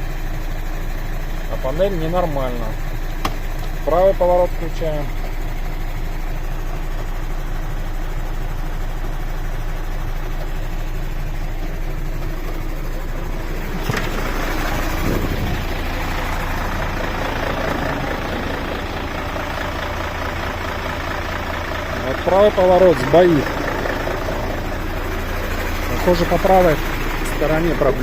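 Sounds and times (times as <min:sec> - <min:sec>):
diesel truck engine idling: 0:00.0 - 0:28.0.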